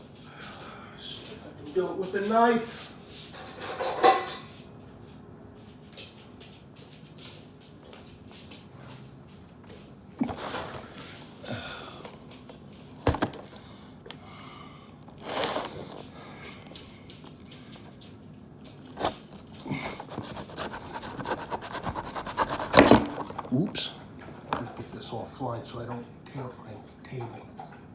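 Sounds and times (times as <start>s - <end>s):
packaging rustling: 10.2s - 11.1s, 12.2s - 13.7s, 15.0s - 16.7s, 18.9s - 23.9s
knife cutting cardboard box: 19.0s - 23.6s.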